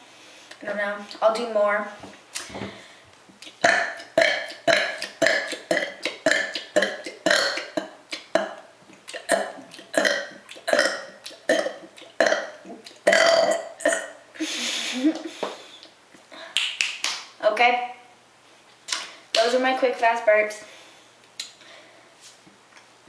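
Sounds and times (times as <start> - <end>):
woman burping: 3.6 - 8.6, 9.2 - 14.2.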